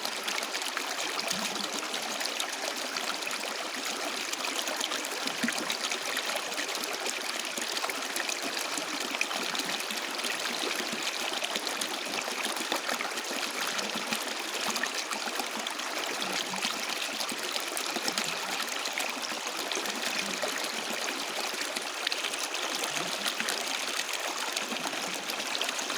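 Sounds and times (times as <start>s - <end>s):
stream babbling over stones: 0.0s - 25.9s.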